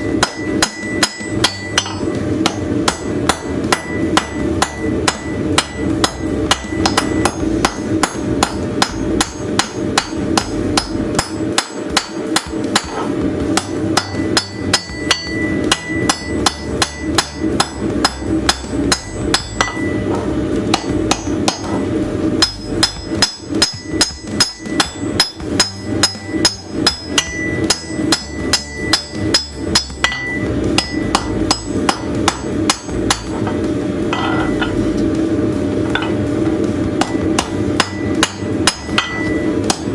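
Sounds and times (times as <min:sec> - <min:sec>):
hammer striking metal: 0:00.0 - 0:35.2, 0:35.8 - 0:39.9
low hum: 0:13.3 - 0:39.9.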